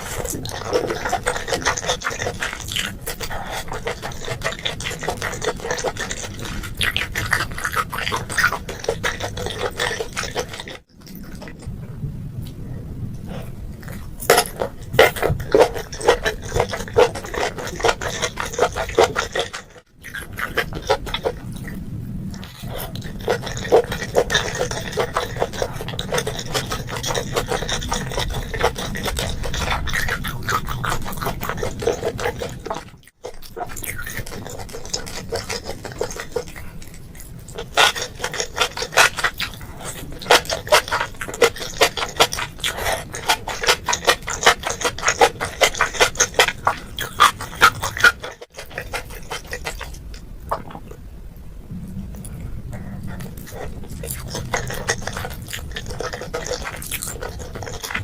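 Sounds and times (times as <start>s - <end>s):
close chewing mouth sounds: 0.0s - 58.0s.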